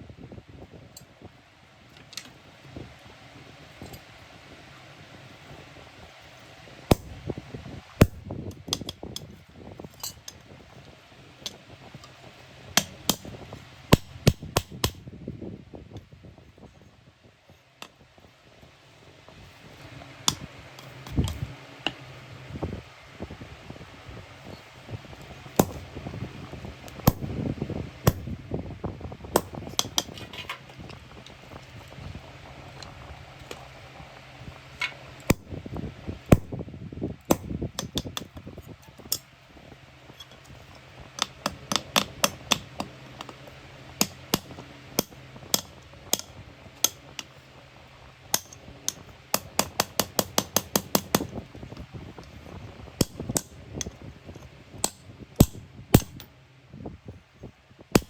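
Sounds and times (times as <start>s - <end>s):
steady low hum: 0.0s - 58.0s
small hammer tapping metal: 37.3s - 38.3s, 41.2s - 43.4s, 44.0s - 47.0s, 48.4s - 51.3s, 54.8s - 56.3s.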